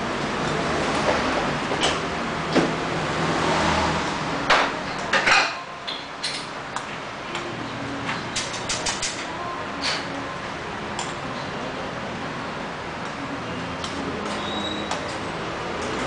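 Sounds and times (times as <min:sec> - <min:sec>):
metallic clicks of hand tools: 0:08.3 - 0:10.0.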